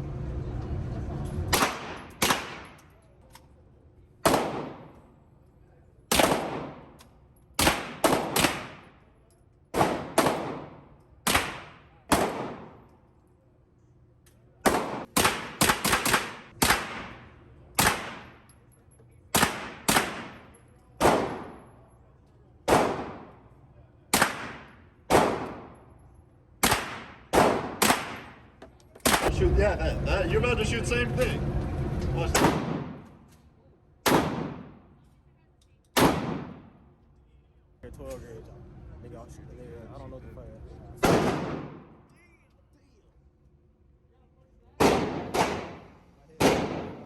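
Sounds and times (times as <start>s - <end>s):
gunshots echoing indoors: 1.5s - 3.1s, 4.2s - 5.4s, 6.1s - 13.2s, 14.6s - 18.7s, 19.3s - 21.9s, 22.6s - 29.4s, 32.3s - 33.4s, 34.0s - 35.1s, 35.9s - 37.1s, 41.0s - 42.1s, 44.8s - 47.0s.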